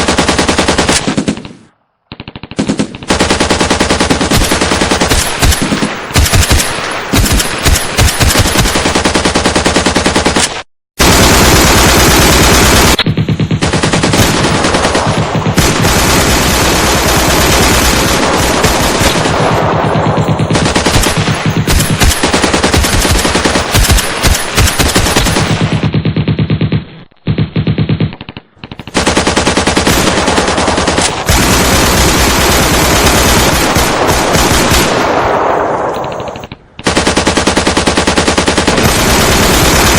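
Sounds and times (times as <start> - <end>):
automatic gunfire bursts: 0.0 - 26.8, 27.4 - 35.4, 36.0 - 39.9.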